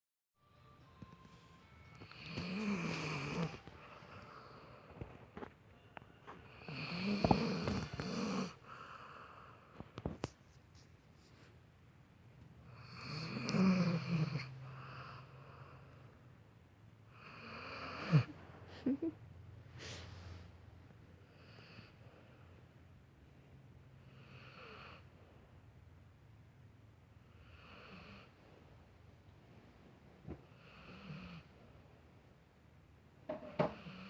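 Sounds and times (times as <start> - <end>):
person snoring: 2.0 - 4.8, 6.5 - 9.2, 12.8 - 14.6, 17.2 - 19.0.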